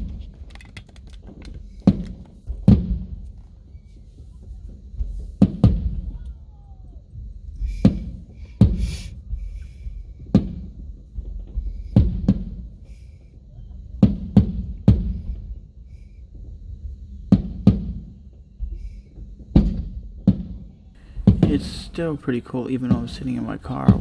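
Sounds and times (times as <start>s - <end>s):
muffled fireworks booms: 0.0s - 0.6s, 1.2s - 24.0s
low rumble: 20.8s - 24.0s.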